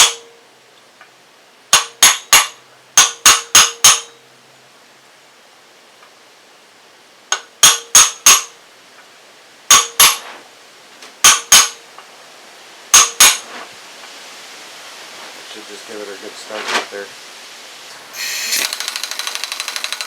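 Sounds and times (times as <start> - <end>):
hammer striking metal tool: 0.0 - 0.3, 1.7 - 4.2, 7.3 - 8.5, 9.7 - 10.2, 11.2 - 11.8, 12.9 - 13.4.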